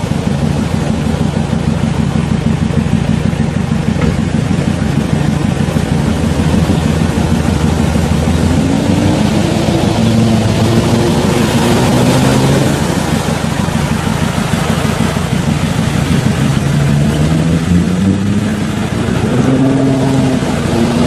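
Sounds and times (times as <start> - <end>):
car engine revving: 0.0 - 21.0
steady wash of noise: 0.0 - 21.0.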